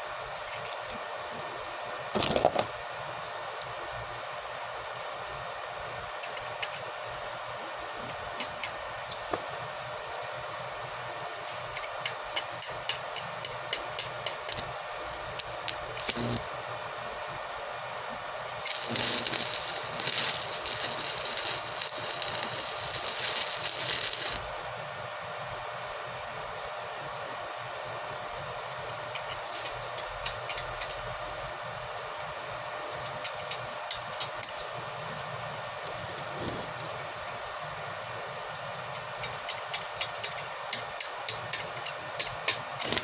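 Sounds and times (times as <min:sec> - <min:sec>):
welding arc crackling and hissing: 0:02.2 - 0:02.7, 0:15.4 - 0:16.5, 0:18.6 - 0:24.7, 0:42.5 - 0:43.0.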